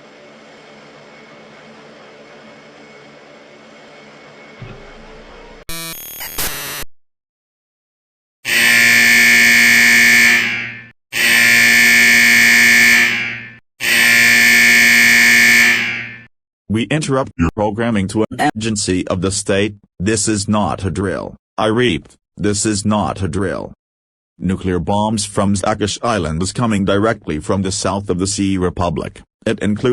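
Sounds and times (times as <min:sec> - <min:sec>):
screechy digital data bursts: 0:05.7 - 0:06.9.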